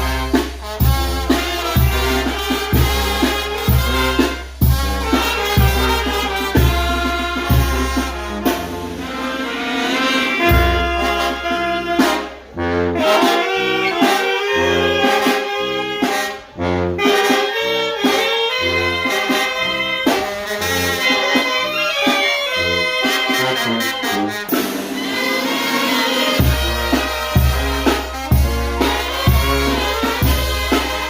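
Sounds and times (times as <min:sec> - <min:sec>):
saxophones: 0:00.0 - 0:31.0
trombones: 0:00.0 - 0:31.0
trumpets: 0:00.0 - 0:31.0.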